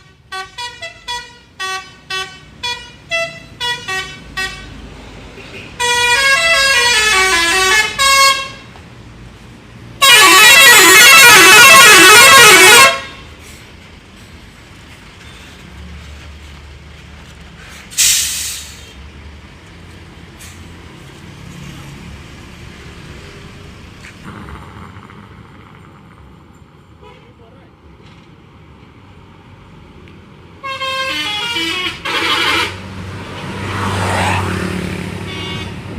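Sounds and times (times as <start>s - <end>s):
musical bus horn tune: 0.0s - 4.8s, 5.8s - 8.7s, 10.0s - 13.3s, 30.6s - 32.9s, 35.2s - 35.9s
low traffic rumble: 0.0s - 35.9s
short hissing burst: 17.7s - 19.0s.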